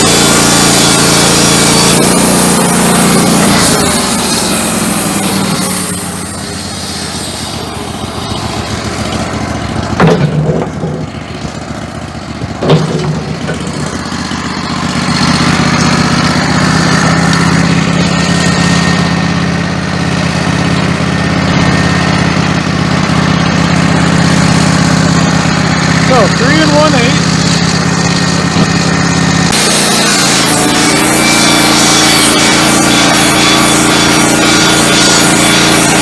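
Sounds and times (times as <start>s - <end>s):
sawmill engine drone: 0.0s - 36.0s
sharp knocks: 9.1s - 14.5s.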